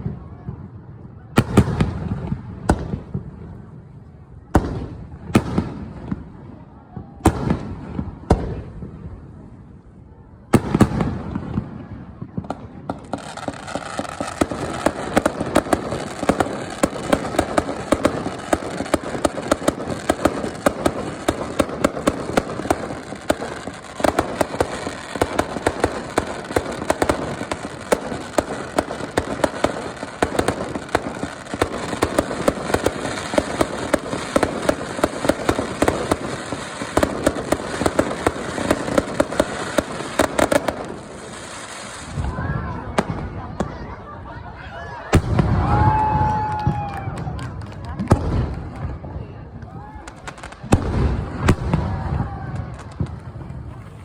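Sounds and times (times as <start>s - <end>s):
fireworks crackling: 0.0s - 54.0s
fireworks bang: 10.5s - 43.9s, 45.1s - 47.3s, 50.1s - 54.0s.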